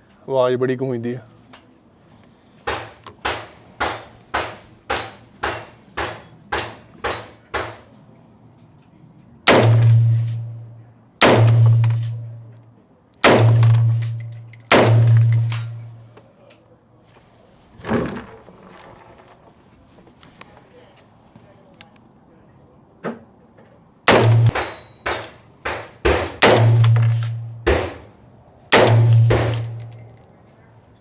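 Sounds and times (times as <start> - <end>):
heavy gunshots with echo: 9.5 - 10.4, 11.2 - 12.2, 13.2 - 14.1, 14.7 - 15.5, 24.1 - 28.1, 28.7 - 29.8
light gunshots: 9.5 - 10.4, 11.2 - 12.2, 24.1 - 28.1, 28.7 - 29.9.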